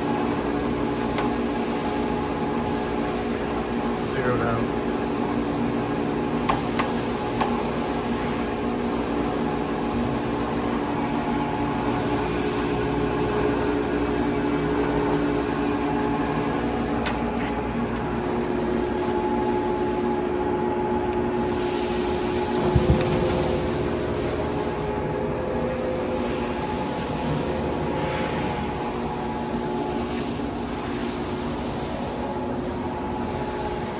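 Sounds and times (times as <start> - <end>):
heavy knock: 22.6 - 23.6.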